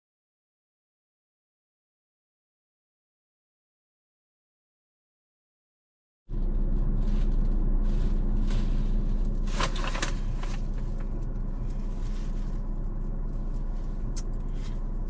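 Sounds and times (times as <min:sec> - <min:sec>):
car idling from inside: 0:06.3 - 0:15.0
short rustle: 0:07.0 - 0:12.8.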